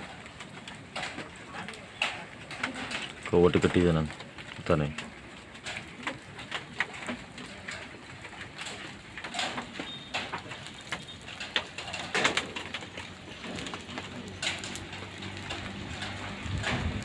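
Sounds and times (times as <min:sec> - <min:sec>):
raindrops on a metal roof: 0:00.0 - 0:17.0.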